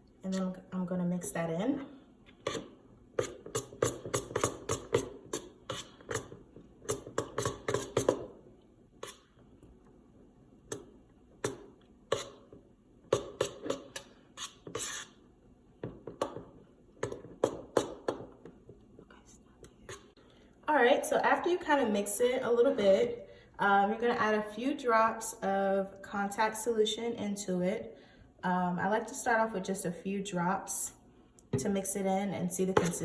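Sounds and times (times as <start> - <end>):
utensil stirring thick mix in bowl: 2.3 - 9.8, 10.7 - 15.2, 15.8 - 19.0, 19.6 - 20.2.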